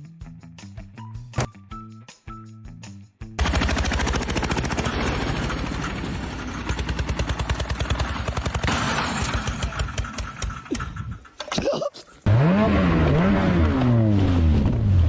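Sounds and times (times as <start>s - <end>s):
music: 0.0s - 3.4s
rapid mechanical pulsing: 3.4s - 11.4s.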